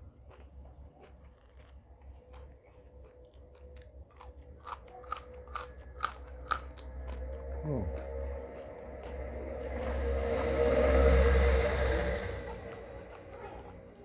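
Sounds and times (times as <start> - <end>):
chewing crisp raw vegetables: 0.0 - 9.8.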